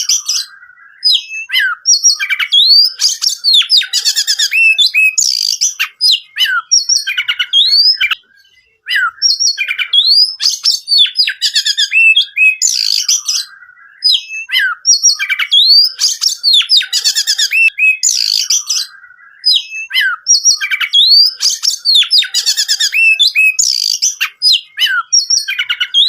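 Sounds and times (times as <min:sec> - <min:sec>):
bird singing whistled phrases: 0:00.0 - 0:26.0.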